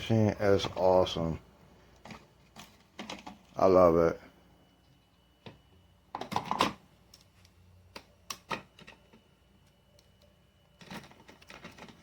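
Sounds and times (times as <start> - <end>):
plastic parts clicking and knocking: 2.0 - 3.6, 5.4 - 7.3, 7.9 - 12.0.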